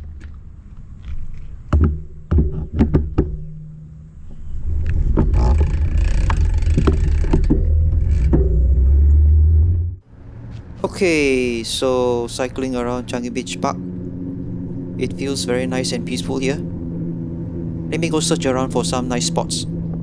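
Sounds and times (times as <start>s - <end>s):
sharp knocks and rattles: 1.1s - 9.8s
wind buffeting microphone: 4.1s - 10.0s, 10.8s - 20.0s.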